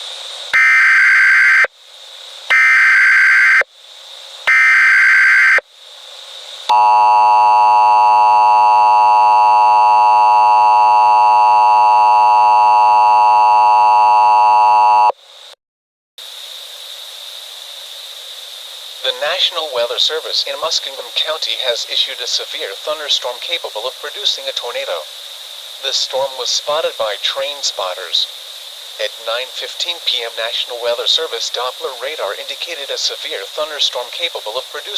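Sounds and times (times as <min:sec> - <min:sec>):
digital data bursts: 0:00.6 - 0:01.7, 0:02.5 - 0:03.6, 0:04.5 - 0:05.6
two-tone attention signal: 0:00.6 - 0:01.7, 0:02.5 - 0:03.6, 0:04.5 - 0:05.6, 0:06.7 - 0:15.1
faint hiss: 0:01.7 - 0:02.6, 0:03.6 - 0:04.5, 0:05.6 - 0:06.7, 0:16.2 - 0:34.9.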